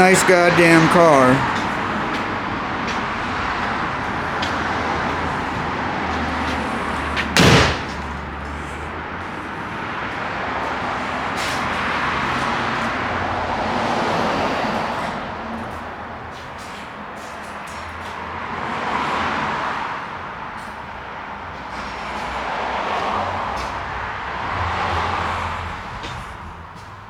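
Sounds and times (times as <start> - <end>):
street traffic: 0.0 - 27.0
loud sharp thump: 7.2 - 8.1.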